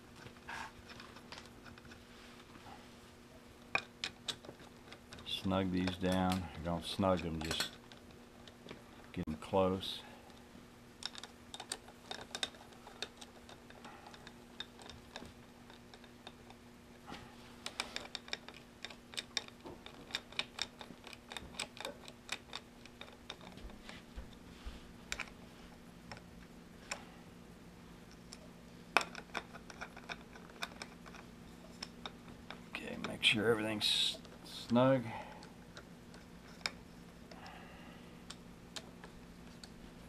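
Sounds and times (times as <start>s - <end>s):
metallic clicks of tools and bolts: 3.7s - 8.1s.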